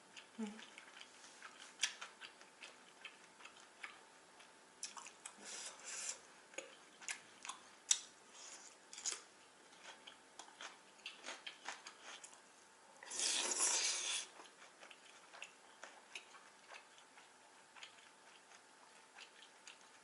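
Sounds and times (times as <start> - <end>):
wet mouth clicks chewing noodles: 0.1 - 8.1, 13.0 - 20.0.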